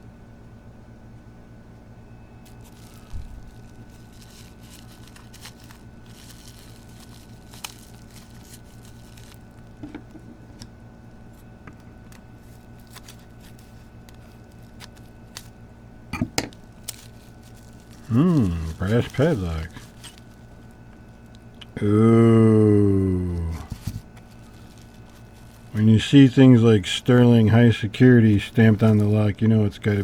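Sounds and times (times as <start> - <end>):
steady low hum: 0.0 - 30.0
packaging rustling and crinkling: 2.4 - 10.2, 12.1 - 15.6, 16.4 - 21.5, 23.6 - 30.0.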